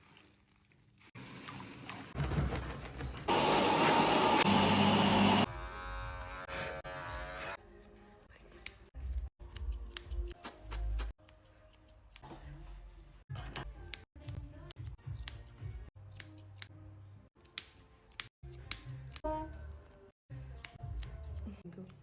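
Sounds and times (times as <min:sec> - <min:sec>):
scissors snipping hair: 0:08.4 - 0:12.3, 0:13.4 - 0:16.8, 0:17.4 - 0:19.3, 0:20.6 - 0:22.0.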